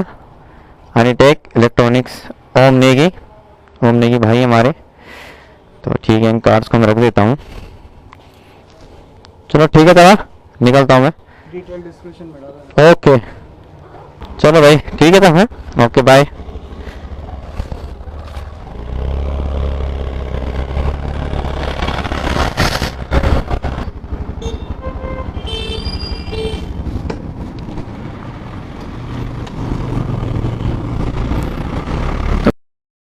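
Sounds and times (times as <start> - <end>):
scooter engine and wind rumble: 16.4 - 32.5
vehicle horn beeping: 24.4 - 26.7.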